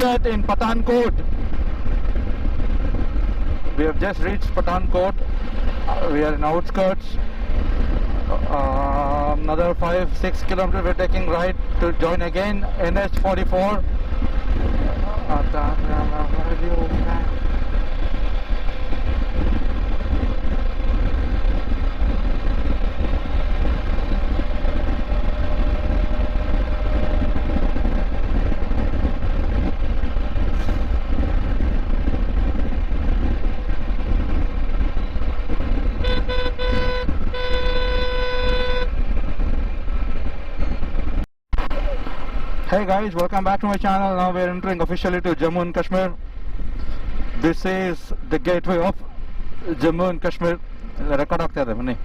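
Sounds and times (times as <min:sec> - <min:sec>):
motorcycle engine at highway speed: 0:00.0 - 0:52.0
vehicle horn: 0:36.0 - 0:39.0.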